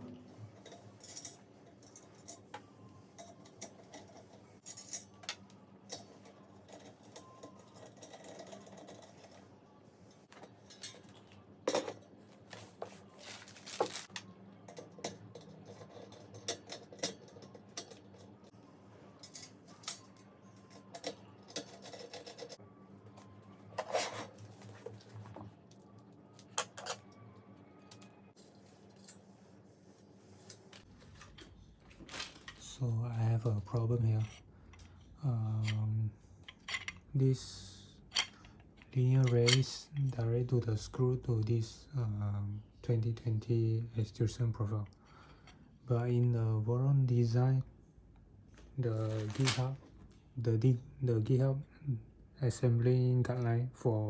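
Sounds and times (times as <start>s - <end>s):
metal tools clinking on workbench: 3.2s - 9.4s, 10.2s - 14.1s, 14.7s - 18.4s, 19.2s - 22.6s.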